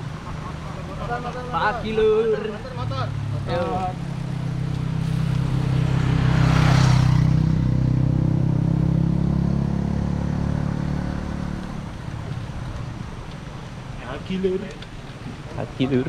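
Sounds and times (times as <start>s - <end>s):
motorcycle engine passing by: 3.2s - 11.8s.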